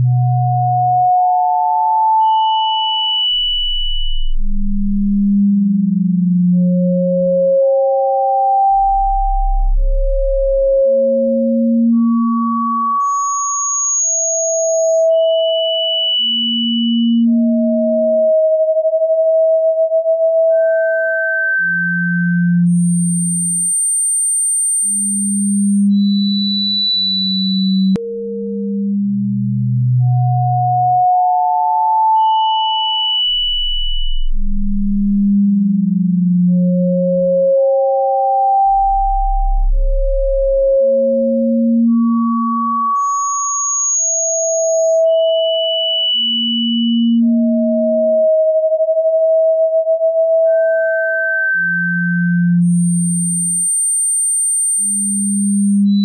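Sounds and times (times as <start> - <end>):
pure sine tones: 0.0 - 56.0.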